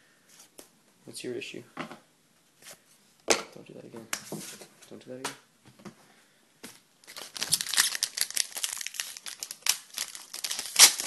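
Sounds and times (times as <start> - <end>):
foil wrapper crinkling: 7.0 - 11.0.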